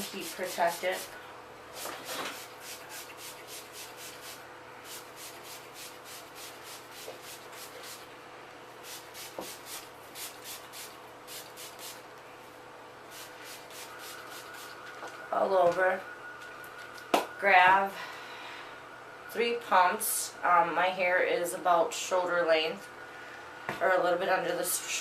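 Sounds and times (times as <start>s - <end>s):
spray bottle misting: 0.0s - 1.1s, 1.7s - 8.1s, 8.8s - 12.1s, 13.1s - 15.1s.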